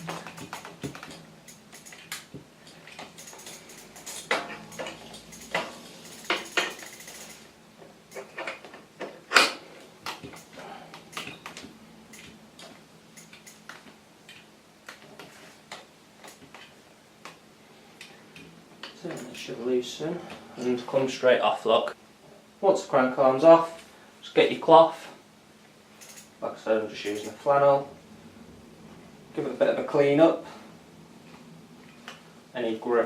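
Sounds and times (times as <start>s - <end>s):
metal tools clinking: 0.0s - 7.5s, 10.2s - 12.4s, 27.0s - 27.4s
metallic clicks: 0.0s - 7.5s, 8.1s - 17.4s, 26.0s - 26.4s, 27.0s - 27.4s.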